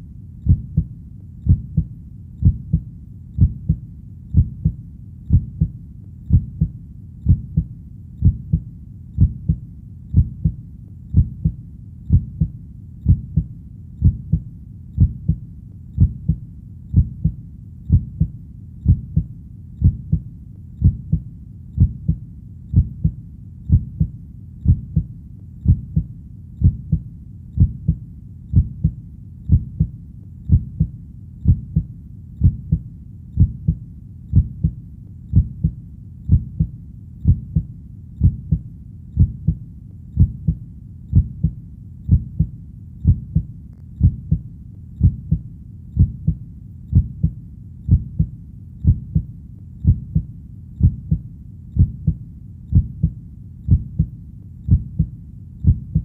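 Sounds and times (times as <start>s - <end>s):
faint low rumble: 0.0s - 56.0s
heartbeat double thud: 54.7s - 56.0s.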